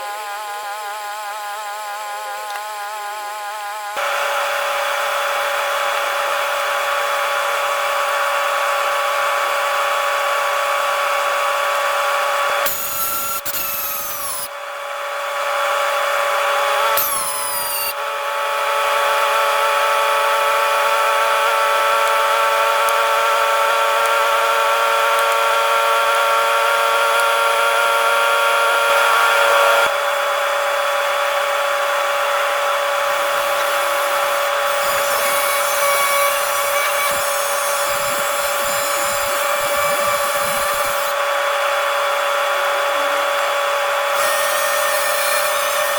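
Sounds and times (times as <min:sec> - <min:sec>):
power tool motor whining: 0:04.0 - 0:45.9.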